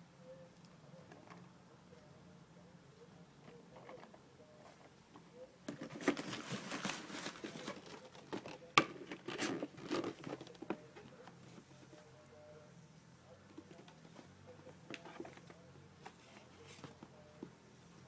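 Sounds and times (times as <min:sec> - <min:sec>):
packaging rustling and crinkling: 0:05.7 - 0:10.6.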